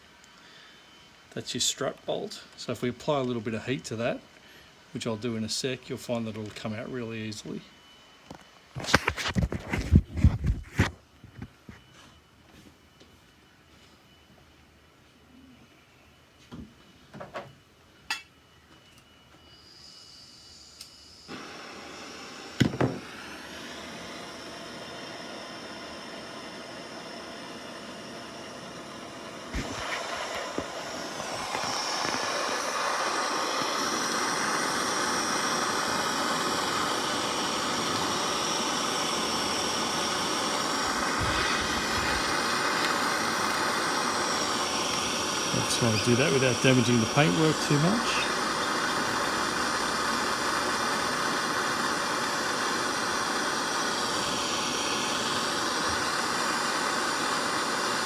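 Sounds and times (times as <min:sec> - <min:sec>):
blowtorch flame hissing: 0:19.6 - 0:58.0.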